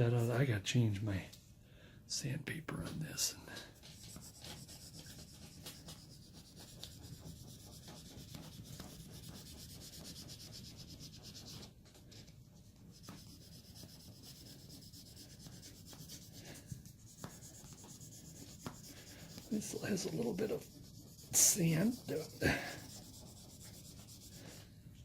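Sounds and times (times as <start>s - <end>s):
sandpaper rubbing: 3.8s - 11.7s, 12.9s - 24.6s.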